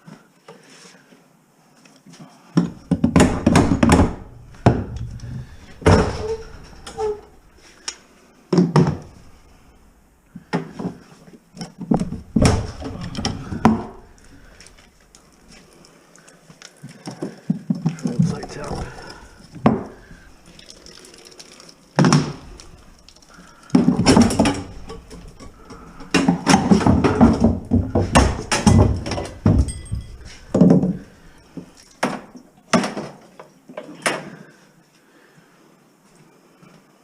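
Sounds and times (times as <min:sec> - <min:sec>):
scrap metal knocks and scraping: 0:23.8 - 0:31.3.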